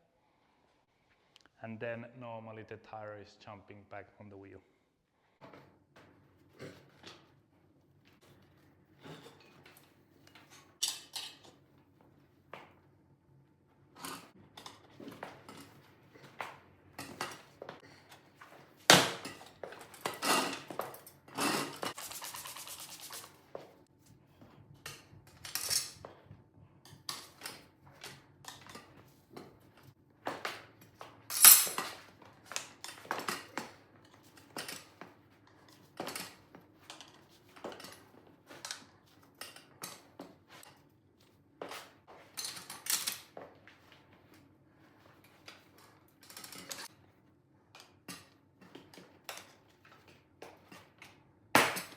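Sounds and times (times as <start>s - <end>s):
metal tools clinking: 9.0s - 11.6s, 24.8s - 26.1s, 31.3s - 33.7s.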